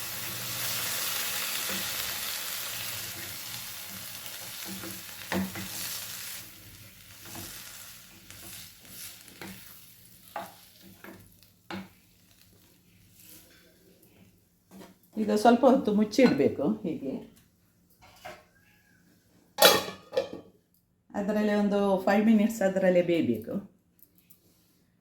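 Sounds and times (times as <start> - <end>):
food sizzling in a pan: 0.0 - 14.8.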